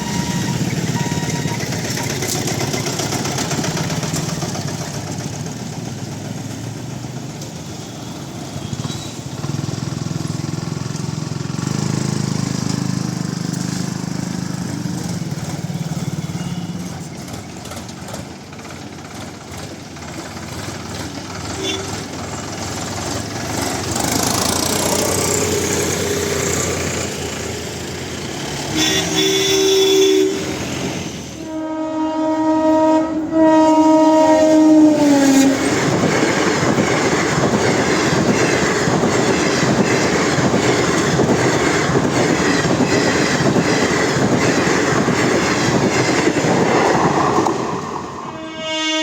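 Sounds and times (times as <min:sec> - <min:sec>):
train wheels clattering on rail joints: 0:00.0 - 0:29.7, 0:35.0 - 0:48.2
train horn blasts: 0:21.6 - 0:22.0, 0:28.7 - 0:30.7, 0:31.4 - 0:35.7, 0:48.2 - 0:49.0.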